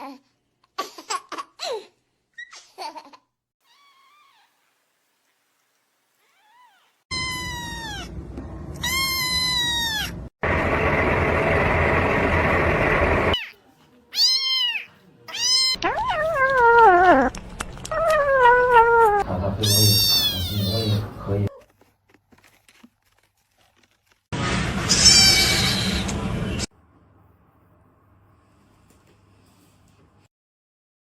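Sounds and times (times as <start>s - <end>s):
kitten meowing: 6.3s - 8.1s, 8.8s - 10.2s, 14.2s - 17.3s, 17.9s - 21.0s
loud noisy sound: 10.4s - 13.4s.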